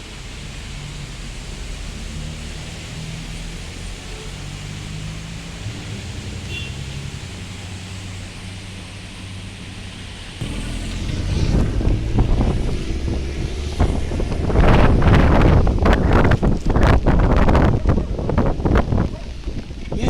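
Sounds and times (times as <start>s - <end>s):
wind buffeting microphone: 10.3s - 20.0s.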